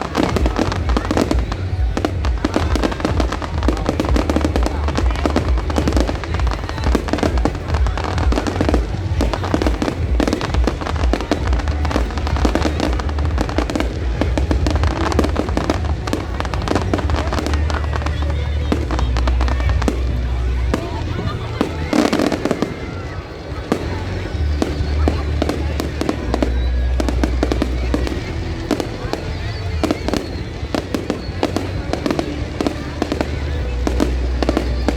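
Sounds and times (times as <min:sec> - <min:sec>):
deep booming rumble: 0:00.0 - 0:23.0
fireworks bangs and crackles: 0:00.0 - 0:34.9.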